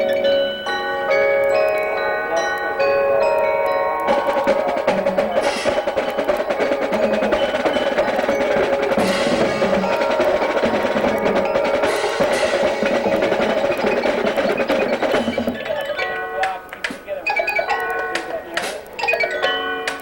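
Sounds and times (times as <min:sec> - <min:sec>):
marching band music: 0:00.0 - 0:20.0
rapid drum strokes: 0:04.0 - 0:15.9.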